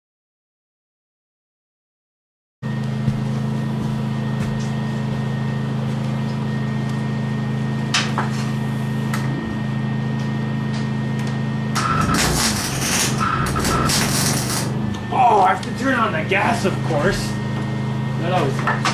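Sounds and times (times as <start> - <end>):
welder electrical hum: 2.6 - 18.9
welding arc crackling buzz: 7.3 - 16.7.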